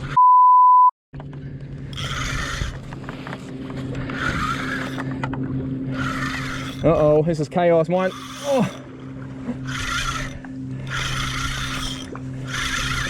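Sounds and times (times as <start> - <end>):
censor bleep: 0.2 - 0.9
steady low hum: 1.2 - 13.0.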